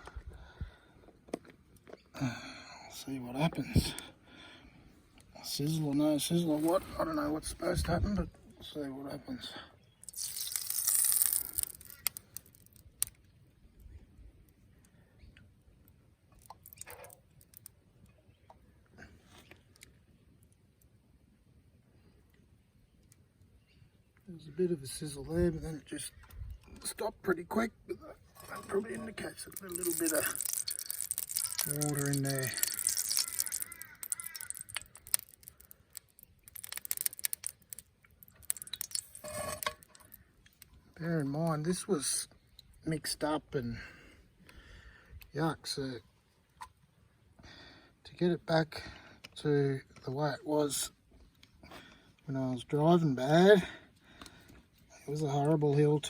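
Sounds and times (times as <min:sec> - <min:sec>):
oil crackling and popping: 0:10.0 - 0:13.4, 0:16.3 - 0:18.1, 0:28.4 - 0:40.7
oil sizzling in hot pan: 0:29.9 - 0:34.7.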